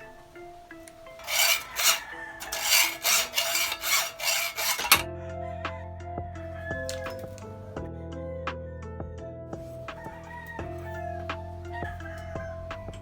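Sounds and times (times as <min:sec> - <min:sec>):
quiet background music: 0:00.0 - 0:13.0
abrasive scraping strokes: 0:00.9 - 0:05.1.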